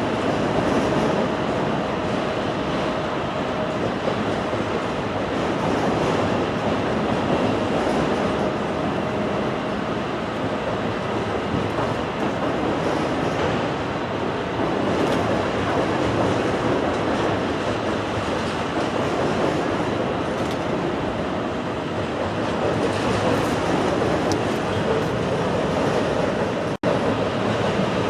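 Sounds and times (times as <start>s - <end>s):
train wheels rolling on rails: 0.0s - 28.0s
clatter over rail joints: 10.4s - 14.0s, 14.6s - 21.0s.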